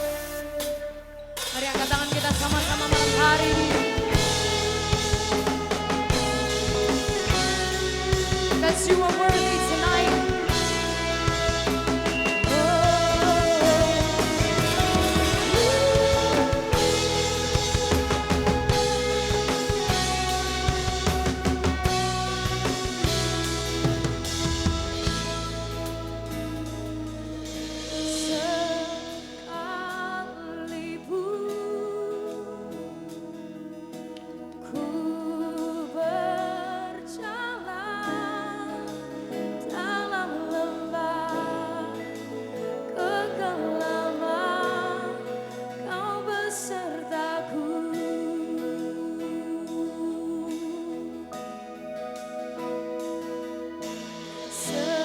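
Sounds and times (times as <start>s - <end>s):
drum kit hits: 0.0s - 29.6s
guitar: 0.0s - 55.0s
sustained keyboard chords: 2.6s - 32.0s.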